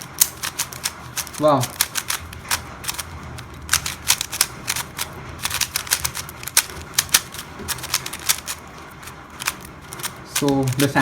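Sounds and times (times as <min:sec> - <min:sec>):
puzzle cube layers clicking: 0:00.0 - 0:08.6.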